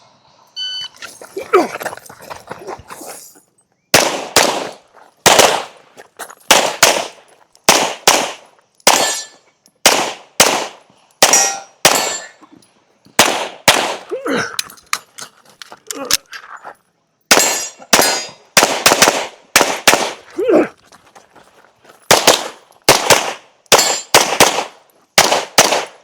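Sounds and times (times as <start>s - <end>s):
pistol shots in pairs: 3.9s - 5.8s, 6.5s - 12.4s, 13.2s - 14.7s, 17.3s - 20.7s, 22.1s - 26.0s.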